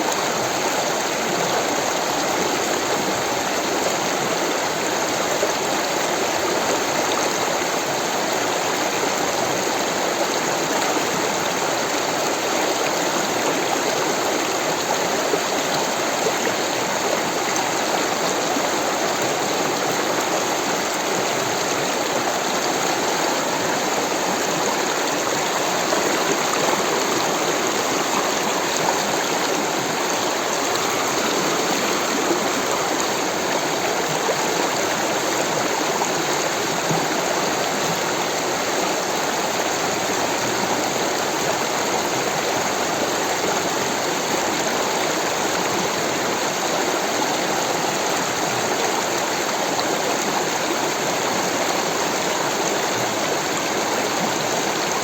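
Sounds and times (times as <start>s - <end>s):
stream water rushing: 0.0s - 55.0s.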